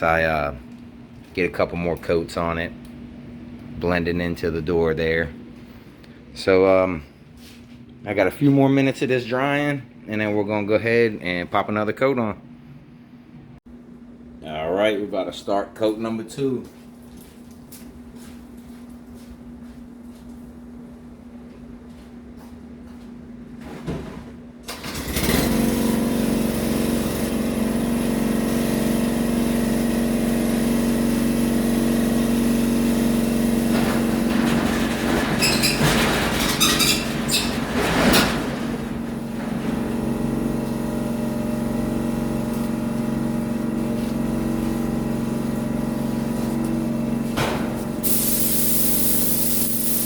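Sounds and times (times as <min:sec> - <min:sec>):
paint sprayer motor humming: 0:25.6 - 0:34.3, 0:39.2 - 0:50.0
spray gun hissing: 0:48.0 - 0:50.0.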